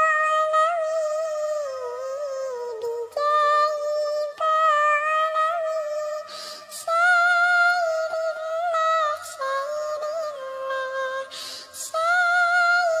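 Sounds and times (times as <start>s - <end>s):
person singing long notes: 0.0s - 13.0s
short breaths: 6.2s - 6.8s, 11.3s - 11.8s.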